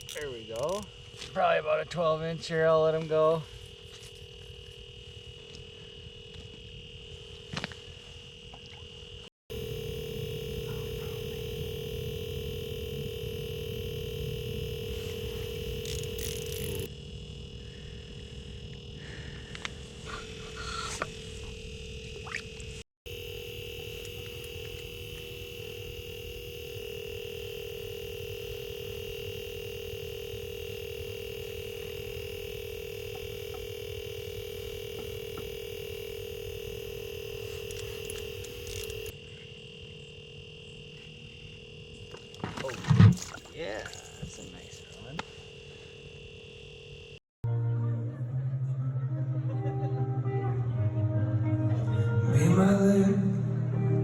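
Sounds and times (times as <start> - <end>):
faint high whine: 0.0 - 42.7
steady electronic tone: 9.5 - 16.9, 23.1 - 39.1
short clicks: 37.3 - 39.1.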